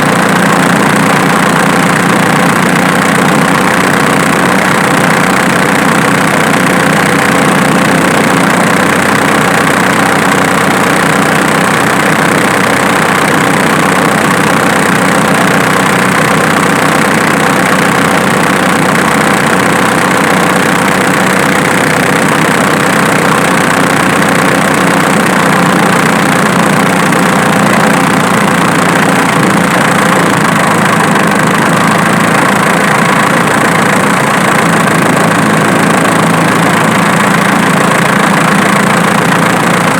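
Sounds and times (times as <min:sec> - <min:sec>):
diesel engine idling with clatter: 0:00.0 - 0:39.9.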